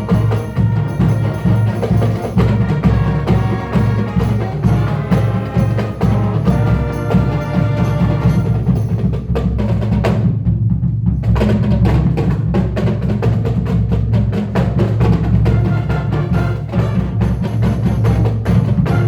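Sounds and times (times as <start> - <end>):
drum and wood-block strikes: 0.0 - 19.0.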